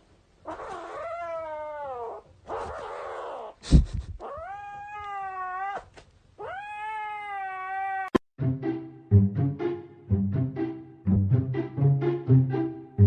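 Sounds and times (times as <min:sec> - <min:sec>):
cat yowling: 0:00.4 - 0:03.6, 0:04.2 - 0:08.2.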